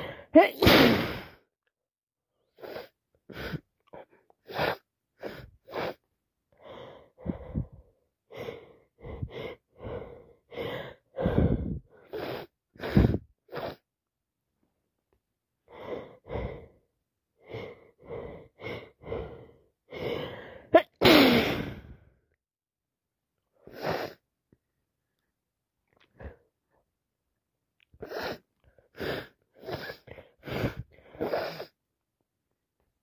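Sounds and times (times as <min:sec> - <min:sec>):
person sneezing: 0:00.0 - 0:01.4, 0:20.8 - 0:21.8
gasping breaths: 0:02.5 - 0:13.8, 0:17.4 - 0:21.0, 0:28.0 - 0:31.8
person sniffing: 0:23.7 - 0:24.2, 0:28.0 - 0:28.4, 0:29.0 - 0:31.8.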